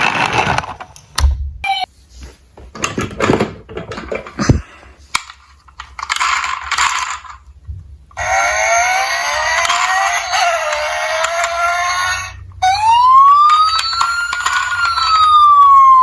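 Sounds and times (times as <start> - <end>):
toy cars clicking and clattering: 5.1 - 16.0
siren wailing: 8.2 - 16.0.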